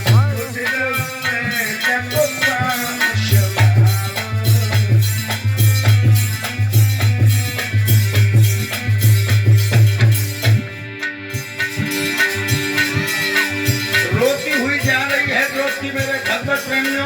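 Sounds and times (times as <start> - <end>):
deep drum beat: 0.0 - 10.7
sustained melody notes: 3.8 - 17.0.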